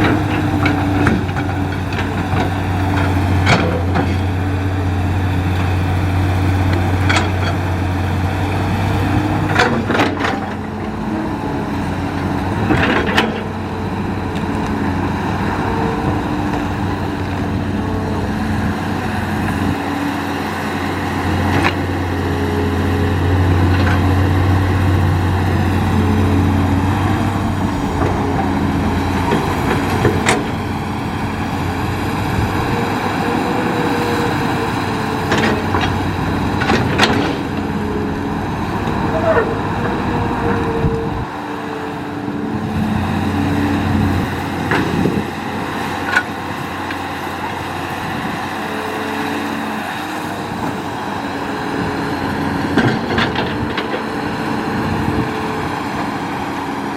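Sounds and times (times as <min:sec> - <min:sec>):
excavator diesel engine under load: 0:00.0 - 0:56.9
sharp clanks and knocks: 0:29.1 - 0:30.6, 0:36.6 - 0:37.6.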